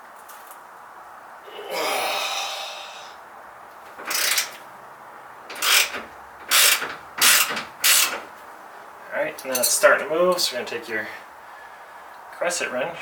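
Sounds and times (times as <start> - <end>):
wrench scraping on bolt: 3.9 - 4.7, 5.5 - 8.4.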